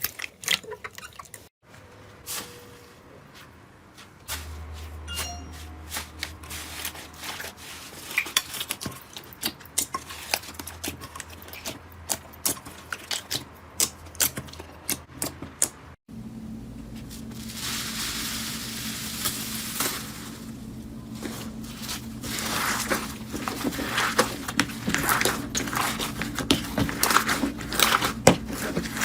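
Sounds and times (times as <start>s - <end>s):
low steady hum: 16.1s - 29.0s.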